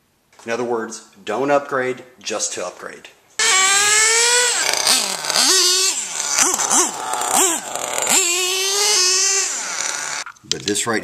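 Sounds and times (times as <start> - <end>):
nitro engine revving: 3.4 - 10.3.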